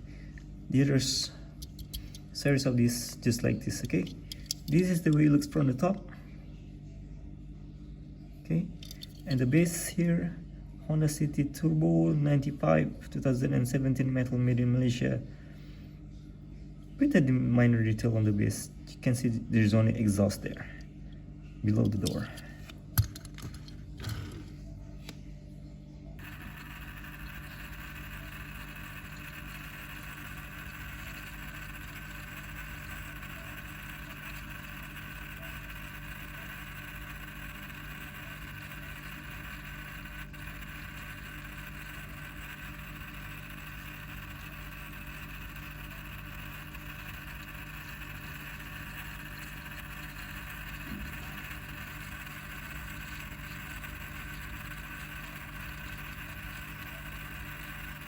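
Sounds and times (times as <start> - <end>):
steady hum: 0.0 - 58.0.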